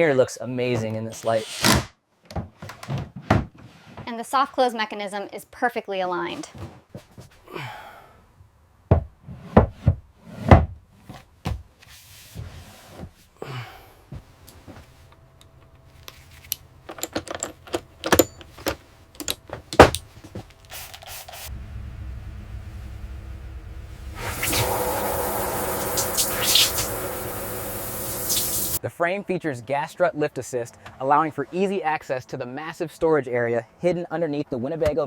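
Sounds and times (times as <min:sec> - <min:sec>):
steady low hum: 0:13.4 - 0:28.8.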